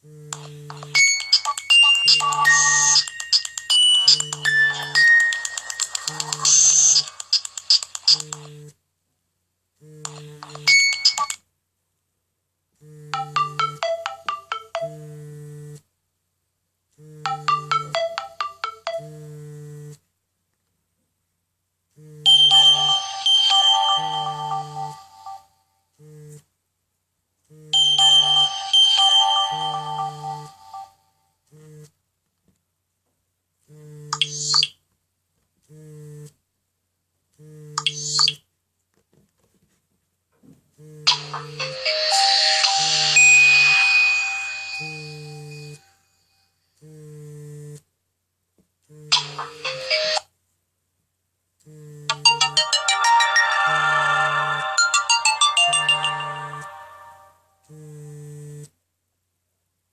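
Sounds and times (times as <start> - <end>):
phone vibration buzzing: 0.0 - 7.2, 8.0 - 8.8, 9.8 - 11.3, 12.8 - 13.8, 14.8 - 15.9, 17.0 - 17.9, 18.9 - 20.0, 22.0 - 23.4, 26.0 - 26.5, 31.5 - 32.0, 33.7 - 34.5, 35.7 - 36.4, 37.4 - 38.2, 40.8 - 45.9, 46.8 - 47.9, 48.9 - 50.2, 51.6 - 52.4, 57.7 - 58.8
ringtone melody of bright notes: 0.4 - 7.3, 10.4 - 11.4, 13.2 - 15.0, 17.3 - 19.2, 22.3 - 25.6, 27.8 - 31.1, 41.1 - 46.3, 49.2 - 50.2, 52.1 - 57.5
phone vibration motor buzzing: 12.8 - 13.3, 14.9 - 15.8, 19.0 - 20.0, 26.0 - 26.5, 31.5 - 32.0, 33.7 - 34.4, 35.7 - 36.4, 37.4 - 38.2, 40.8 - 41.2, 46.8 - 47.9, 48.9 - 49.2, 51.7 - 52.2, 57.7 - 58.8.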